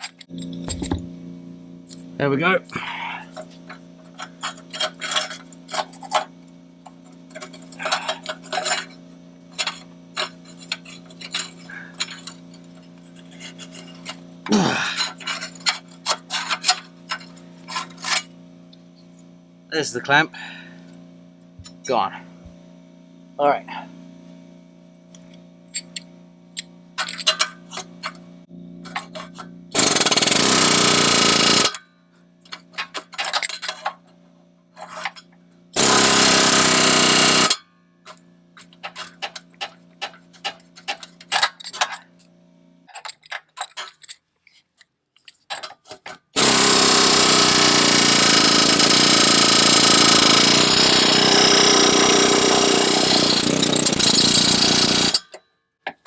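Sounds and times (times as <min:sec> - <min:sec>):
pneumatic air hammer chiseling metal: 0:02.7 - 0:06.3, 0:06.9 - 0:18.3, 0:25.7 - 0:28.2, 0:28.9 - 0:31.9, 0:34.8 - 0:42.0, 0:45.5 - 0:55.4.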